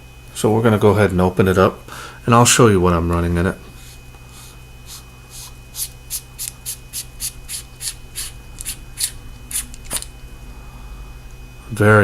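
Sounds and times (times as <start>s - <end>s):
flashlight threads scraping: 3.8s - 10.1s.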